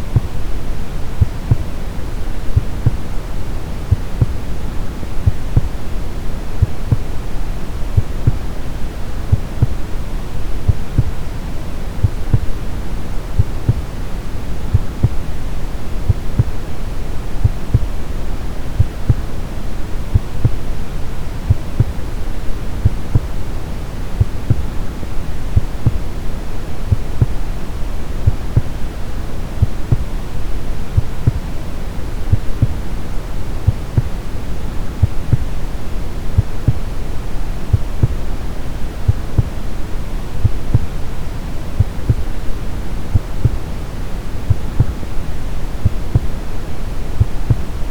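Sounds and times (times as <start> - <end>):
soft low heartbeat thumps: 0.0 - 3.1, 3.9 - 5.9, 6.6 - 7.2, 7.9 - 8.6, 9.2 - 9.9, 10.5 - 11.3, 12.0 - 14.0, 14.6 - 15.4, 16.0 - 19.4, 20.1 - 20.8, 21.4 - 23.4, 24.2 - 26.2, 26.8 - 28.8, 29.5 - 30.2, 30.9 - 31.5, 32.2 - 33.0, 33.6 - 35.7, 36.3 - 37.0, 37.6 - 38.4, 39.1 - 39.7, 40.4 - 41.0, 41.8 - 43.8, 44.4 - 46.4, 47.2 - 47.9
brown noise hiss: 0.0 - 47.9.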